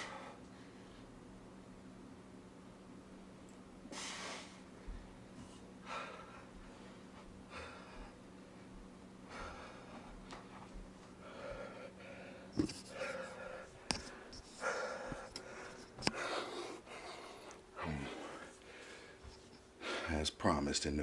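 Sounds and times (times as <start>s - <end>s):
man breathing hard: 0.0s - 1.1s, 5.8s - 8.3s, 9.2s - 10.2s, 11.1s - 20.2s.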